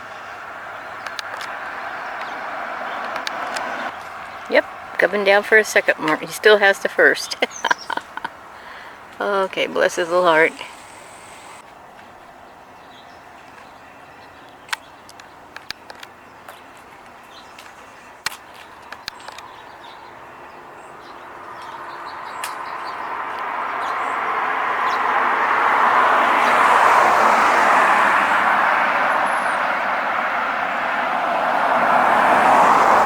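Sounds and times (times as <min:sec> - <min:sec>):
vehicle tyre and engine noise: 0:00.0 - 0:12.7, 0:14.5 - 0:33.0.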